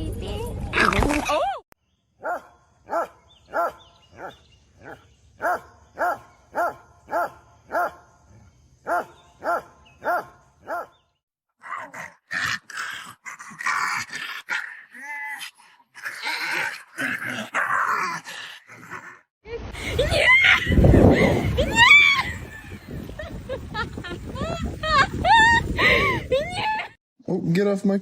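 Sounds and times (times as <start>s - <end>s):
dog barking: 2.2s - 8.0s, 8.9s - 10.9s.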